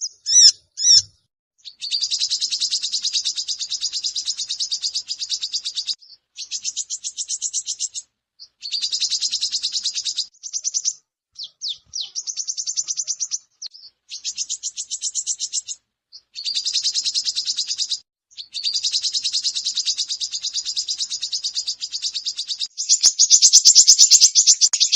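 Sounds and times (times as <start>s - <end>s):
bird chattering trills: 0.0s - 1.1s, 8.6s - 15.8s, 16.4s - 24.9s.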